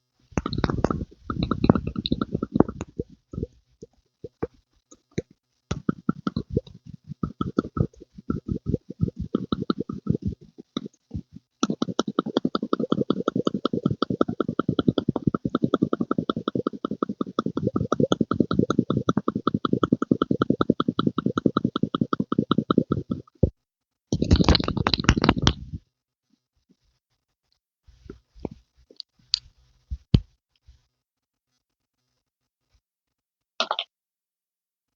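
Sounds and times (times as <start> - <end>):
rhythmic pumping and squelching: 0.3 - 23.5.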